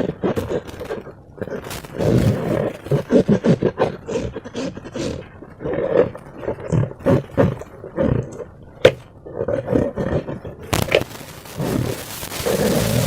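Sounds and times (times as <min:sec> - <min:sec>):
slime squelching and popping: 0:10.7 - 0:13.0.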